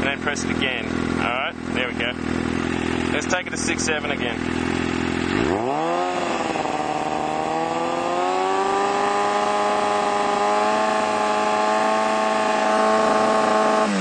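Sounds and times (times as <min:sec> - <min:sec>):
motorcycle engine revving high: 0:00.0 - 0:14.0.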